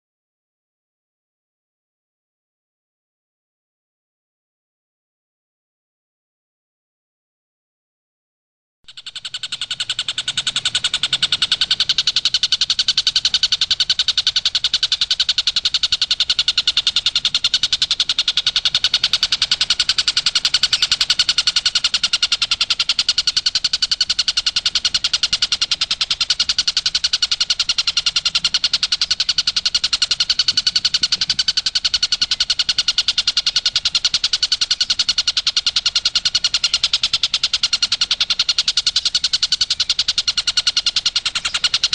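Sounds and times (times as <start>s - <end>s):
kingfisher rapid high call: 8.9s - 41.9s.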